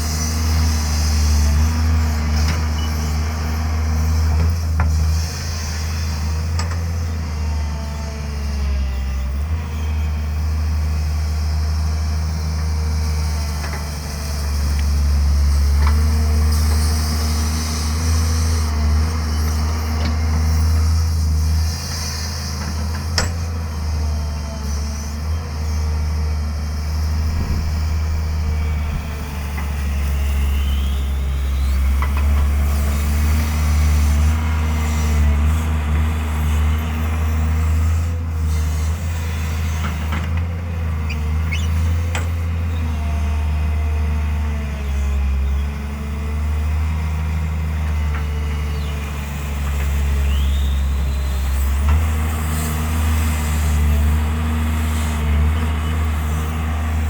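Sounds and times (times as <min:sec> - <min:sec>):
excavator diesel engine running: 0:00.0 - 0:57.0
rising whine: 0:25.7 - 0:31.7.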